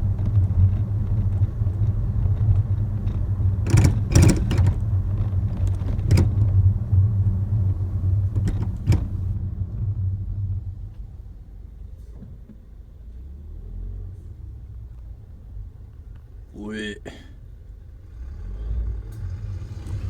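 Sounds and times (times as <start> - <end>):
suspension knocks and rattles: 0.0 - 9.4
low road rumble: 0.0 - 20.0.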